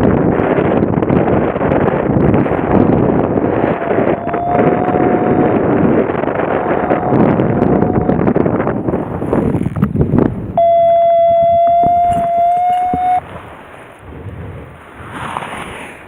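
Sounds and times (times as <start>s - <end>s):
wind buffeting microphone: 0.0s - 16.0s
steady electronic tone: 3.8s - 8.1s, 10.6s - 13.2s.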